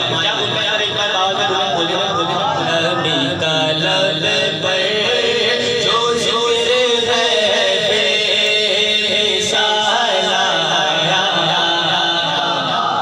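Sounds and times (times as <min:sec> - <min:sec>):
man chanting over a sound system: 0:00.0 - 0:13.0.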